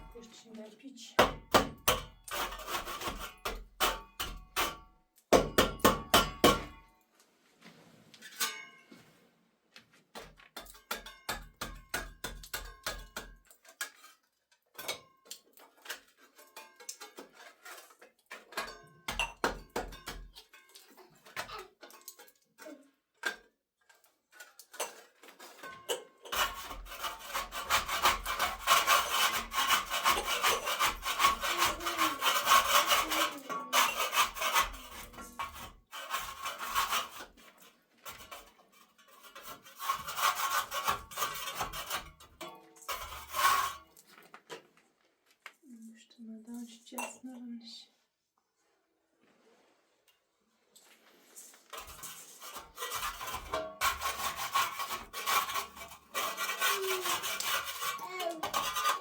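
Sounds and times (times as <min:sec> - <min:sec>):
rasping scrape like sawing: 0:02.2 - 0:03.6, 0:15.8 - 0:18.7, 0:24.3 - 0:44.0, 0:51.0 - 0:59.0.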